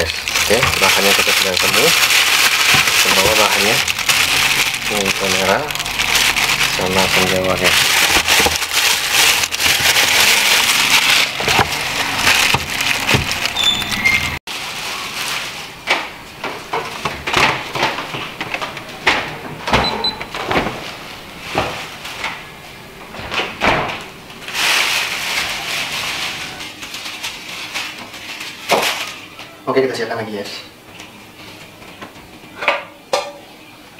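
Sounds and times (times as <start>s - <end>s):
kitchen items knocking: 0.0s - 13.7s
packaging crinkling and rustling: 0.0s - 16.1s, 24.3s - 29.6s.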